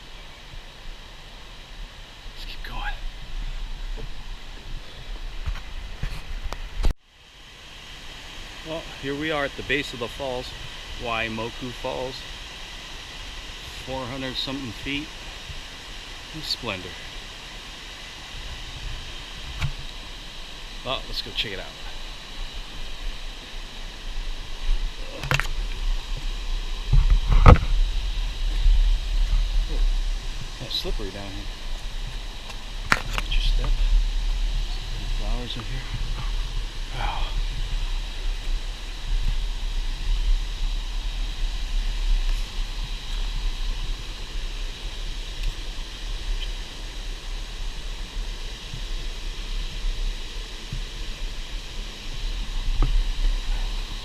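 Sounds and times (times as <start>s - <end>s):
low uneven rumble: 8.5s - 54.0s.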